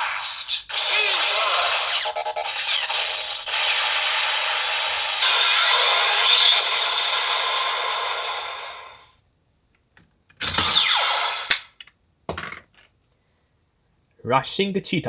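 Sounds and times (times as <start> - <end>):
electronic toy sound effect: 0.0 - 8.8, 10.4 - 11.6
sharp plastic clicks: 11.5 - 12.8.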